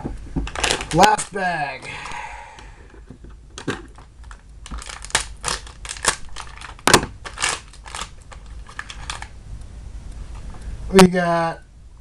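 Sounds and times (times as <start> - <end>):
packet crinkling: 0.4 - 9.4.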